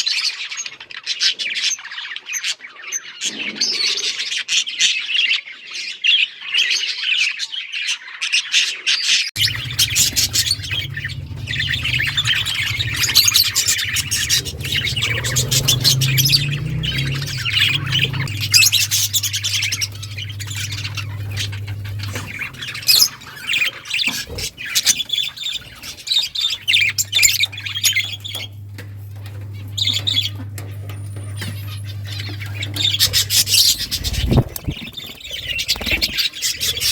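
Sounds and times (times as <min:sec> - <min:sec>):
budgies chirping and squawking: 0:09.4 - 0:36.9
steady low hum: 0:09.4 - 0:36.9.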